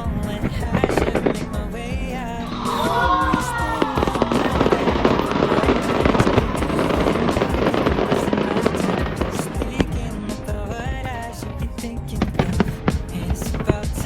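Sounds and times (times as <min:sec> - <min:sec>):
fireworks crackling and bursting: 0:02.6 - 0:10.5.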